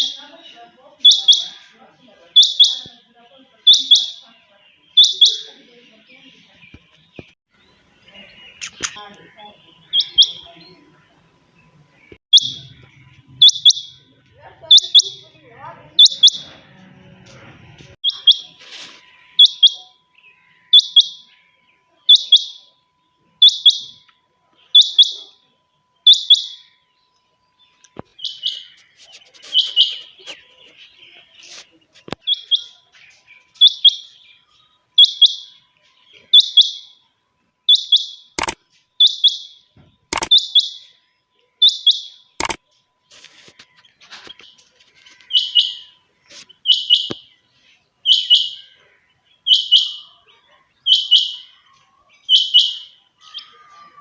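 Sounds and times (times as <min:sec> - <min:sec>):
quail calling: 0:01.0 - 0:01.8, 0:14.6 - 0:15.3
sharp clicks: 0:08.6 - 0:09.2, 0:38.4 - 0:38.6, 0:40.1 - 0:40.5, 0:42.4 - 0:42.7.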